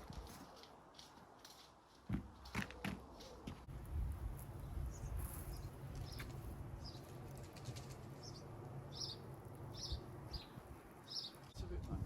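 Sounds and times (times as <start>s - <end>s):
small bird chirping: 4.7s - 7.1s, 7.7s - 11.6s.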